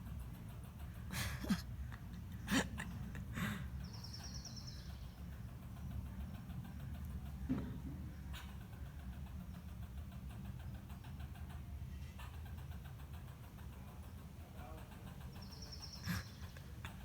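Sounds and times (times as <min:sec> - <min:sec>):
squirrel alarm barks: 0:12.2 - 0:17.0.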